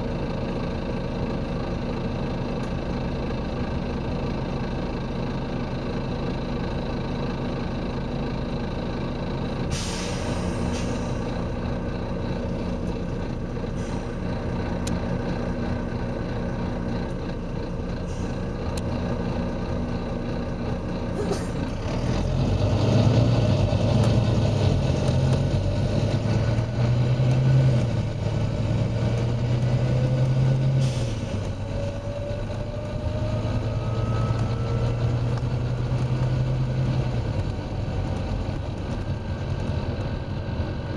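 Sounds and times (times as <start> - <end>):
diesel bus engine: 0.0 - 40.9
rising whine: 31.7 - 35.5.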